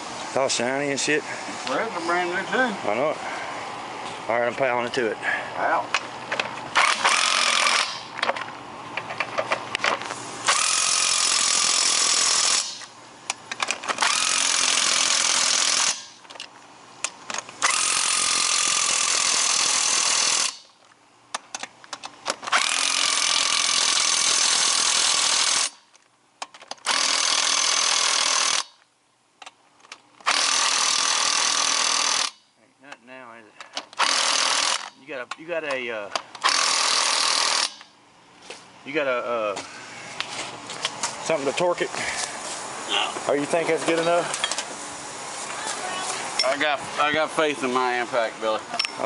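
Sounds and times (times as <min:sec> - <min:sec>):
impact wrench driving lug nuts: 0:06.4 - 0:08.4, 0:10.5 - 0:12.9, 0:13.5 - 0:16.4, 0:17.3 - 0:20.8, 0:21.6 - 0:25.9, 0:26.7 - 0:28.8, 0:30.2 - 0:32.5, 0:33.8 - 0:35.0, 0:36.4 - 0:37.9.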